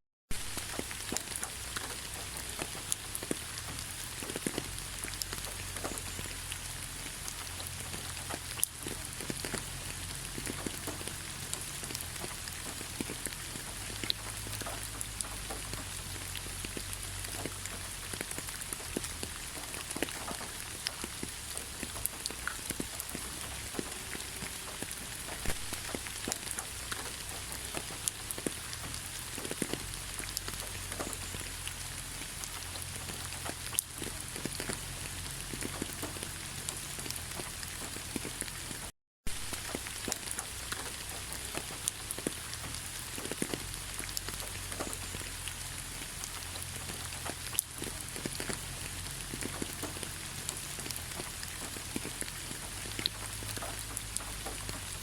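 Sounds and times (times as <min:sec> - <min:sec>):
raindrops ticking: 0:00.3 - 0:55.0
steady rain falling: 0:00.3 - 0:55.0.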